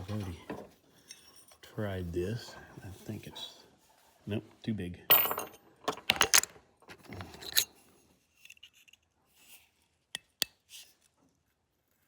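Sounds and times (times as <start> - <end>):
small metal tools clinking: 5.1 - 6.5, 7.1 - 7.7.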